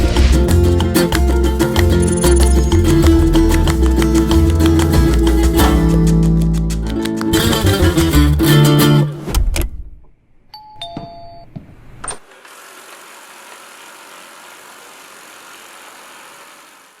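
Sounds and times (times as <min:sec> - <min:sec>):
guitar music: 0:00.0 - 0:09.2
two-note electronic chime: 0:02.0 - 0:03.1.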